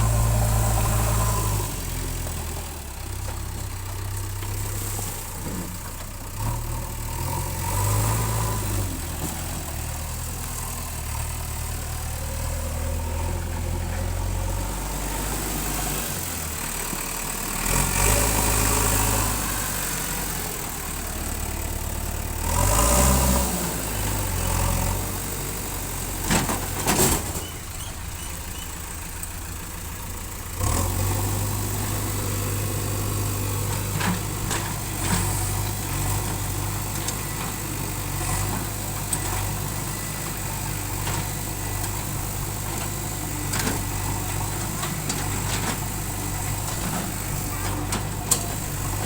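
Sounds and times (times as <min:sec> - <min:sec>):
heavy diesel engine running: 0:00.0 - 0:49.0.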